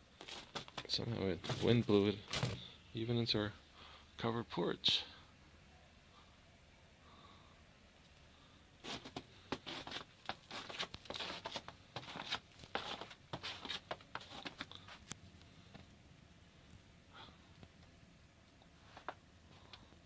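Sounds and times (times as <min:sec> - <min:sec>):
crunching and rustling: 0:00.2 - 0:02.7, 0:08.8 - 0:15.2.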